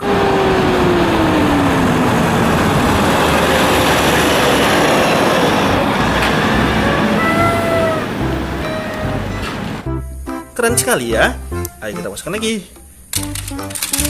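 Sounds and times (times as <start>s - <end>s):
whine sliding down in pitch: 0.0s - 9.8s
vehicle noise: 0.0s - 9.9s.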